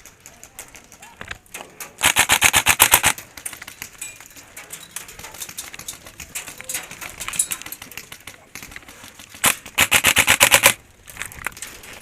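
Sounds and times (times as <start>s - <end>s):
faint scattered shots: 0.0s - 4.0s, 5.0s - 10.8s
airsoft gun firing full-auto: 2.0s - 3.2s, 9.4s - 10.8s.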